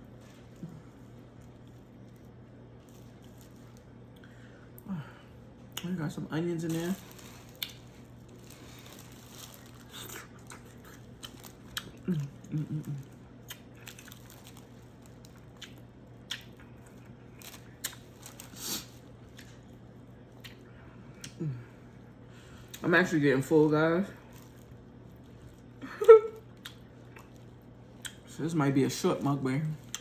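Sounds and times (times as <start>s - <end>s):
wet clicks and crunches: 6.6s - 18.5s, 24.3s - 28.4s, 29.0s - 30.0s
chewing and mouth smacking: 7.0s - 18.6s, 19.2s - 21.4s, 26.4s - 28.3s, 29.8s - 30.0s.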